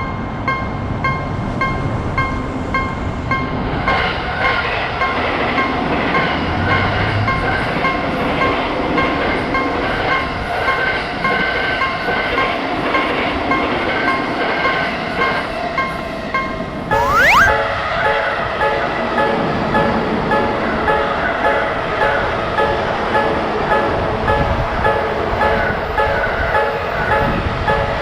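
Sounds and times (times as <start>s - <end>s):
level crossing warning bell: 17.5s - 28.0s.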